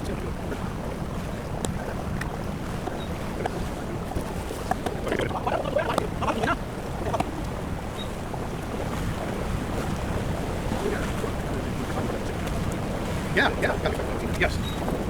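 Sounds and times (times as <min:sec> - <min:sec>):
boat engine low rumble: 0:00.0 - 0:15.0
water noise: 0:00.0 - 0:15.0
wind: 0:00.0 - 0:15.0.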